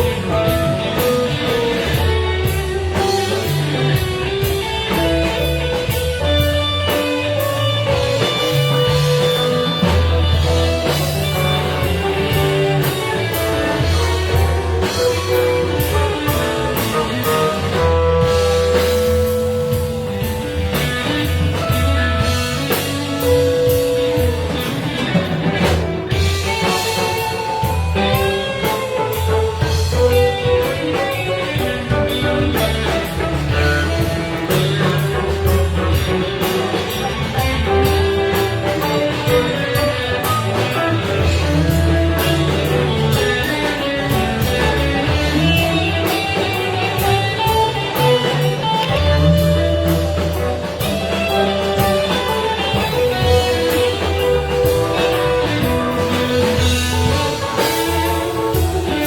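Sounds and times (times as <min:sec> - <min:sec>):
bass guitar: 0:00.0 - 0:59.0
drum kit: 0:00.0 - 0:59.0
electric guitar lines: 0:00.0 - 0:59.0.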